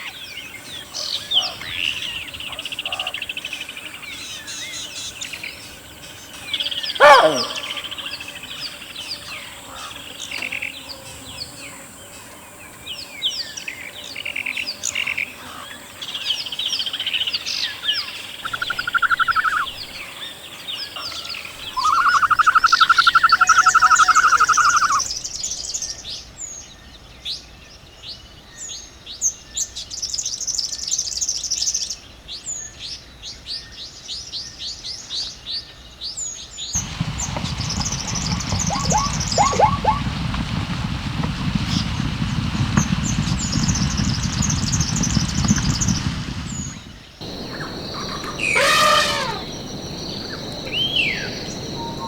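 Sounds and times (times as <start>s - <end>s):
bird fast trill: 18.4s - 19.9s, 37.6s - 40.0s, 47.2s - 52.0s
high downward-sweeping bird chirps: 36.8s - 40.0s, 46.5s - 52.0s
low noisy rumble: 36.8s - 52.0s.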